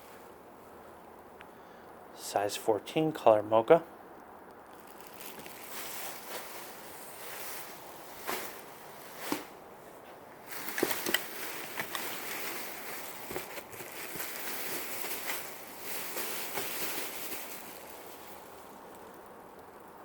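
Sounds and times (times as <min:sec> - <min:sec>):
fabric rustling and crinkling: 0:04.7 - 0:20.0.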